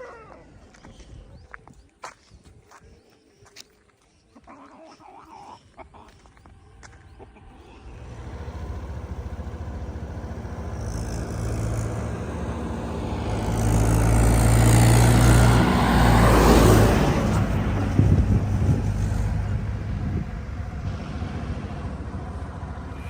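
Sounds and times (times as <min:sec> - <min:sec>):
vehicle engine passing by: 0:07.5 - 0:23.0.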